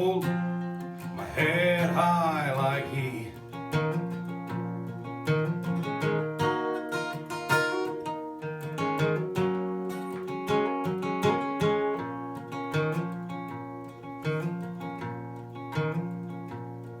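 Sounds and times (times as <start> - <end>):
acoustic guitar strumming: 0.0 - 17.0.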